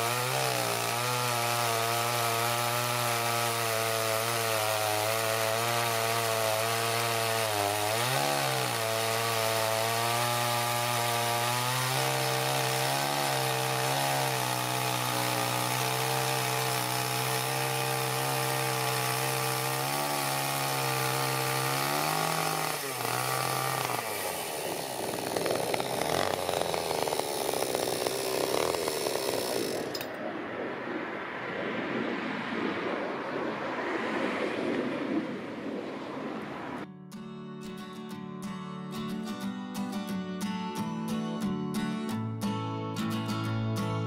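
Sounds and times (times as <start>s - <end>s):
chainsaw cutting wood: 0.0s - 30.1s.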